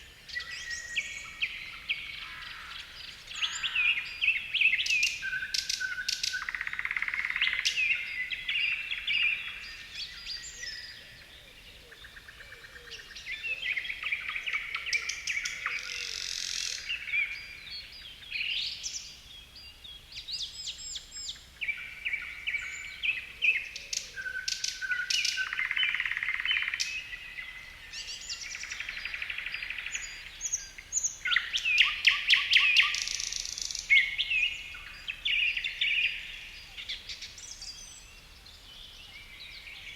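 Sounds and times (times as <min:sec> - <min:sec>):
songbirds singing and chirping: 0:00.0 - 0:39.9.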